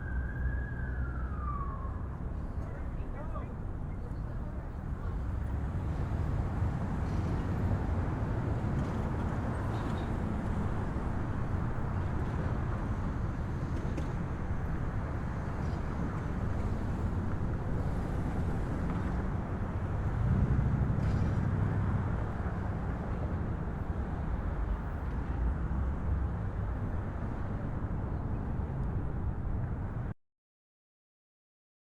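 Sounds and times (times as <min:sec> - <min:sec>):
traffic rumble: 0:00.0 - 0:30.1.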